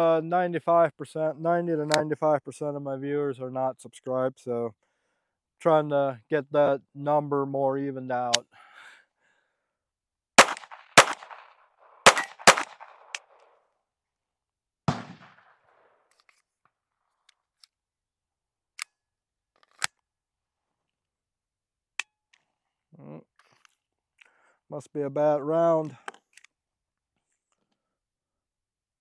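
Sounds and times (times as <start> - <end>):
faint pistol clicks: 10.4 - 11.4, 12.1 - 13.2
pistol shots with echo: 10.4 - 13.2, 14.9 - 15.5.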